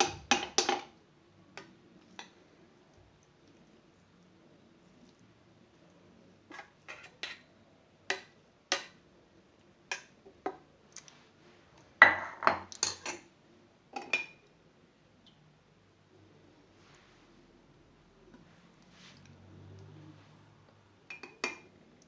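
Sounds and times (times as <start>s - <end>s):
metal spoon clinking on glass: 21.1s - 21.7s.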